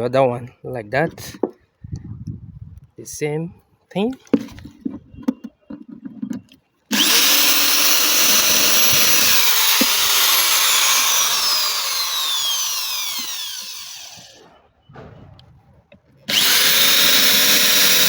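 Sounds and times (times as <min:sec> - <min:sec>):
electric drill whine: 0:06.9 - 0:14.4, 0:16.3 - 0:18.0.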